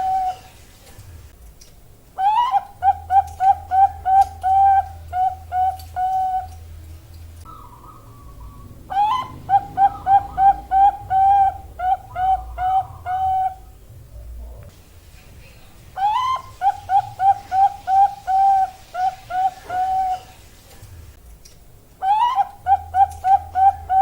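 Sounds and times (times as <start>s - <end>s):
dove cooing: 0.0s - 0.6s, 2.2s - 6.8s, 7.4s - 14.6s, 16.0s - 20.4s, 22.0s - 24.0s.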